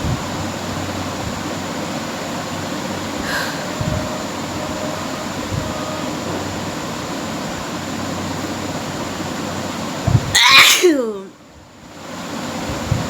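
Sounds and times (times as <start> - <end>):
steady background hiss: 0.0 - 13.0
woman sneezing: 10.4 - 11.3.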